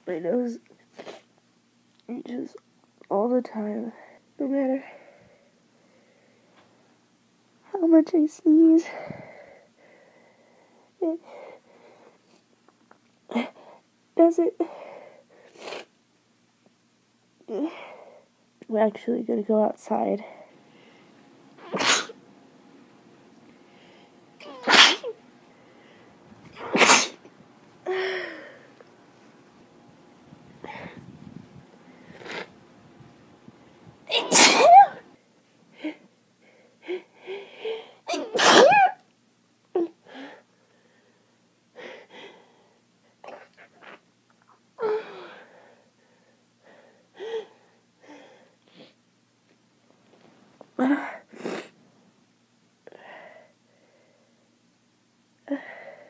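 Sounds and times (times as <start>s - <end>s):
soft voiced breath-out: 8.8s - 12.4s
person sneezing: 21.6s - 22.2s, 24.4s - 25.2s, 26.5s - 27.2s, 34.1s - 35.0s, 38.1s - 39.0s.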